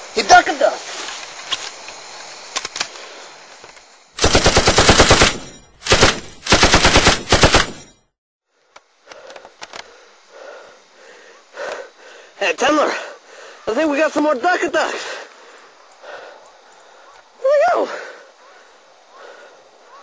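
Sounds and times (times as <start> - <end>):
faint outdoor noise: 0.0 - 20.0
machine-gun fire: 4.2 - 8.0.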